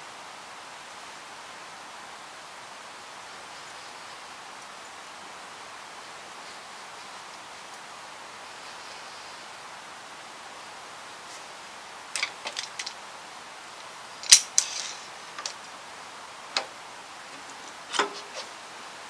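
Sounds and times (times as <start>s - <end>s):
hand tools clicking on metal: 14.2s - 15.6s.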